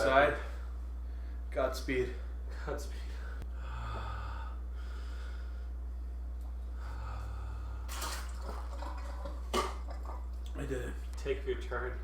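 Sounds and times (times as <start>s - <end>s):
steady low hum: 0.0s - 12.0s
man breathing heavily: 3.0s - 7.9s.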